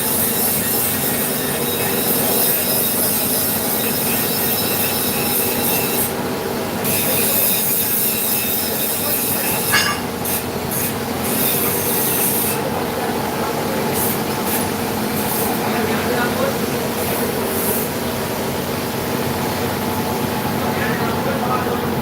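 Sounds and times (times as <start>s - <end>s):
metal milling screech: 0.0s - 6.2s, 6.8s - 12.6s
sharp squeal: 1.3s - 6.1s.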